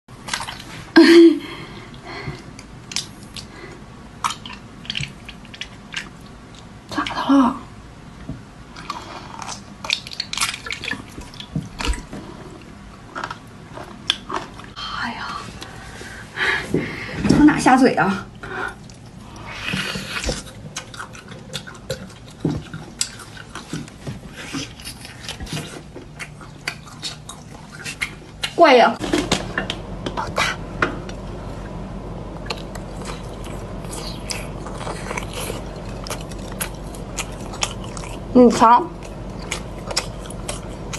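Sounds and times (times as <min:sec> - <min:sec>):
wet mouth eating noises: 0:02.4 - 0:07.2, 0:08.7 - 0:14.8, 0:18.7 - 0:28.6, 0:32.4 - 0:40.9
person chewing and crunching food: 0:08.7 - 0:14.8, 0:18.7 - 0:28.6, 0:32.4 - 0:40.9
chewing clicks: 0:24.9 - 0:28.6, 0:32.4 - 0:38.3, 0:38.9 - 0:40.9.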